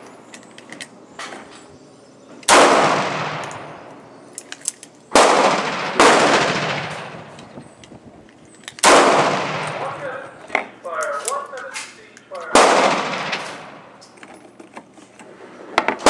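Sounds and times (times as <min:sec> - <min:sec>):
handgun shots with echo: 0:02.4 - 0:03.8, 0:05.1 - 0:07.4, 0:08.8 - 0:10.1, 0:11.2 - 0:14.0.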